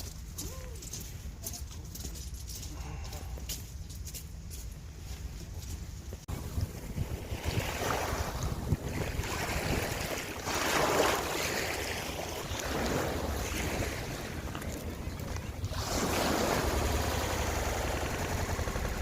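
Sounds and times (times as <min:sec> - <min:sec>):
wind rumbling on microphone: 0:04.8 - 0:19.0
sea waves washing onto shore: 0:06.4 - 0:19.0.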